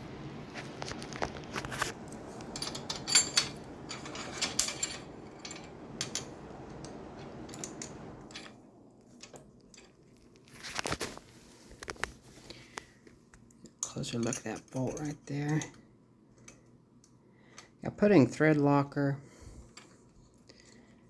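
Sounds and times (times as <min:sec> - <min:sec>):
low rustling: 0:00.0 - 0:13.0.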